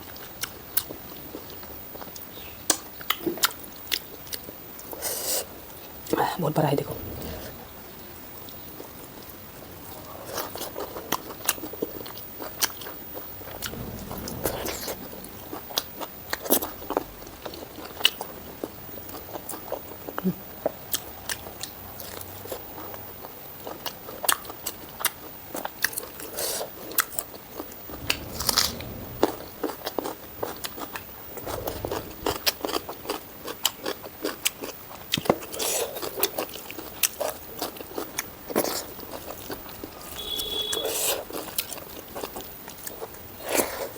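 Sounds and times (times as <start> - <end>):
crunchy chewing of food: 0.0 - 5.9, 8.5 - 43.9.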